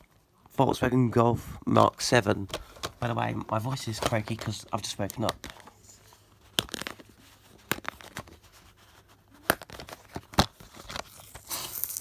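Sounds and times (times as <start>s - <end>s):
packaging clicks and taps: 2.4s - 5.8s, 6.4s - 8.4s, 9.4s - 11.5s
packaging crinkling and tearing: 2.5s - 12.0s.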